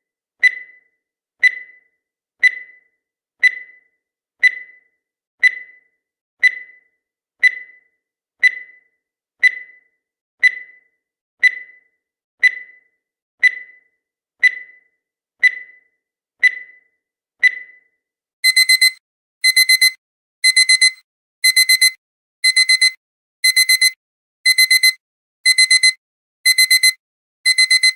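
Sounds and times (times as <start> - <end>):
digital alarm clock beeps: 0.4 - 27.9.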